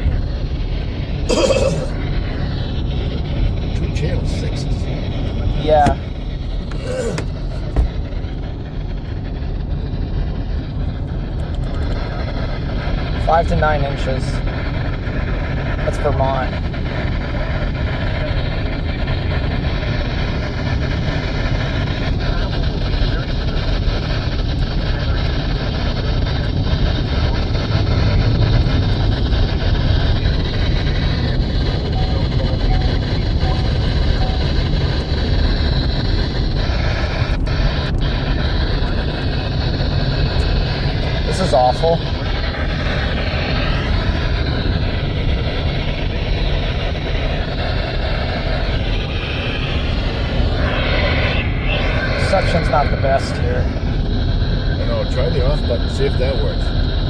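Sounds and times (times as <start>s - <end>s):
radio static hiss: 1.3s - 8.2s, 13.0s - 19.2s, 29.9s - 56.8s.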